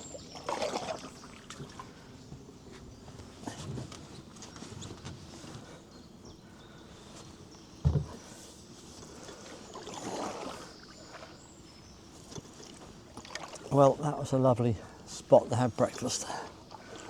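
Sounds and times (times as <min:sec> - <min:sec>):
paddle strokes in water: 0:00.0 - 0:05.8, 0:08.0 - 0:11.4, 0:12.0 - 0:14.1, 0:15.1 - 0:17.0.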